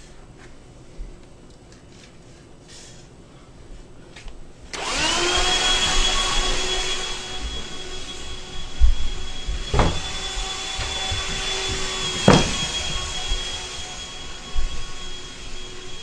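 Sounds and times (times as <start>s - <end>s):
electric motor whine: 4.7s - 16.0s
loud rush of air: 5.0s - 16.0s.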